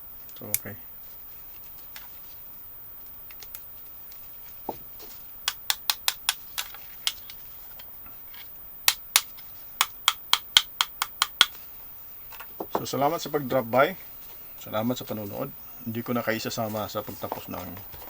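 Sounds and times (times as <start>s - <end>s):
battery cells clicking together: 0.2s - 0.8s, 3.0s - 4.2s, 5.4s - 12.5s.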